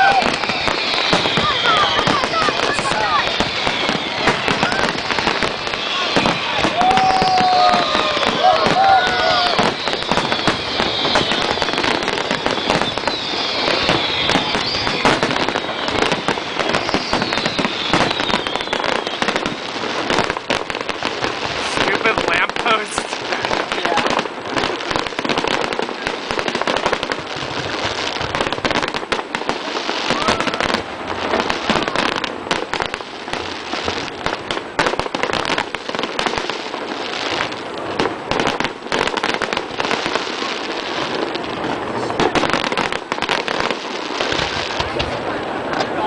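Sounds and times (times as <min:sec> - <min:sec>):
fireworks bangs and crackling: 0:00.0 - 0:46.0.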